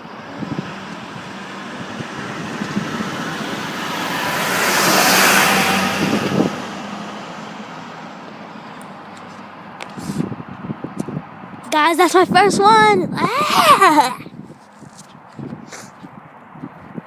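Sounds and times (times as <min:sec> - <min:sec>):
car driving past: 0:00.2 - 0:09.6.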